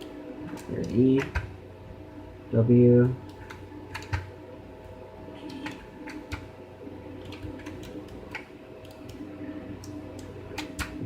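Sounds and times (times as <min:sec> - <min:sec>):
faint steady hum: 0:00.0 - 0:11.0
keyboard clicks and taps: 0:00.5 - 0:01.5, 0:03.3 - 0:04.3, 0:05.4 - 0:06.5, 0:07.2 - 0:09.2, 0:09.8 - 0:11.0.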